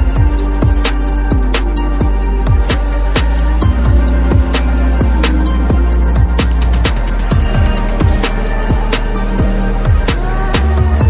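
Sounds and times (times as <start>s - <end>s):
deep kick drums: 0.0s - 11.0s
sustained bass: 0.0s - 11.0s.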